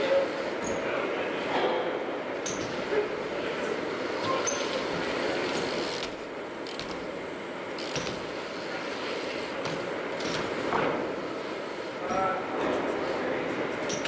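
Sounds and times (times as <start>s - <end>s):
tyres rolling on ramps: 1.5s - 14.0s
bike freewheel ratchet clicking: 4.4s - 10.6s.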